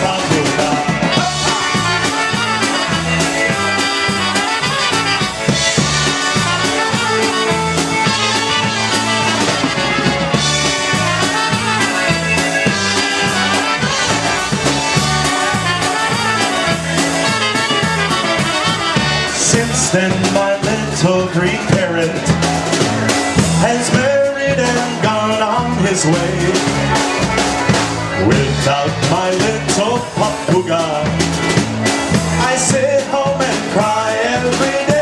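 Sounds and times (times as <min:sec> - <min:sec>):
bouncing bass line: 0:00.0 - 0:35.0
polka band playing: 0:00.0 - 0:35.0.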